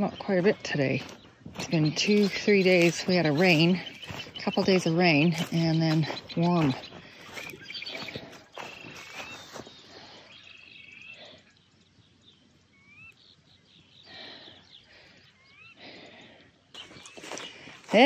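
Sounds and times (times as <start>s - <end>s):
birds whistling upward notes: 6.1s - 15.8s.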